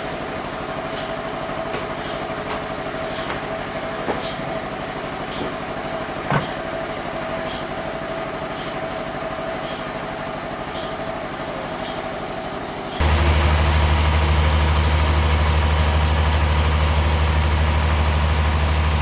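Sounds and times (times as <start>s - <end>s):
bandsaw humming: 12.9s - 19.0s.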